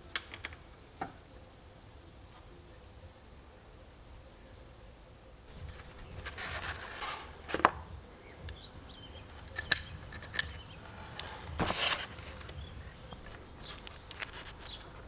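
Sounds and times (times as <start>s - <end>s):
rubbing and scraping of parts: 5.5s - 15.0s
sharp clicks and taps: 9.3s - 14.9s.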